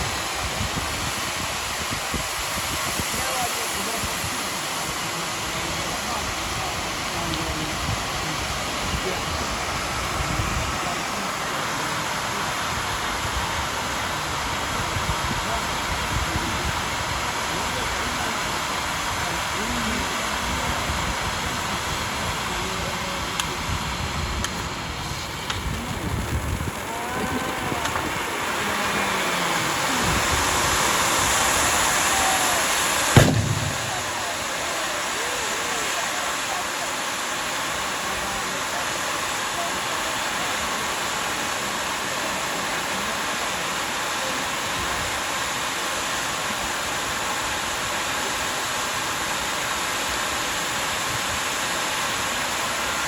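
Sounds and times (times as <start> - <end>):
murmur of crowd voices: 0.0 - 45.5
rushing outdoor noise: 0.0 - 53.0
loud bang: 33.1 - 34.6.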